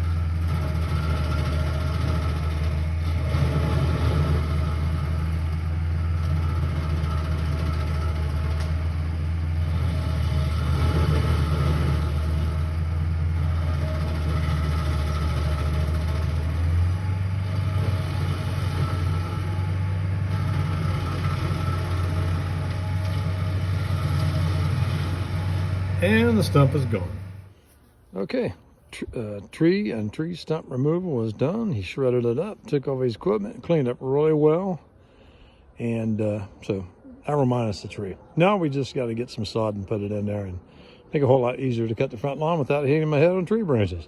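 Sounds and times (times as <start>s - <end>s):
engine humming: 0.0s - 37.7s.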